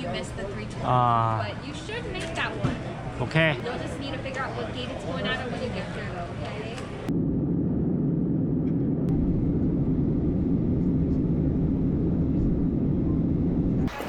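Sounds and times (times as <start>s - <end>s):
jet airliner drone: 6.8s - 14.0s.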